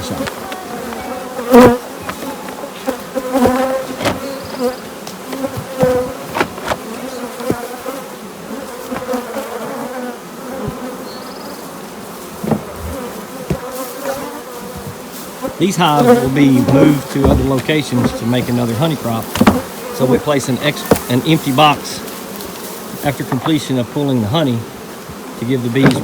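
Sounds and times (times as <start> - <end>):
sharp knocks: 0.0 - 7.8, 12.4 - 13.7, 15.9 - 19.8, 25.8 - 26.0
bees buzzing: 0.0 - 26.0.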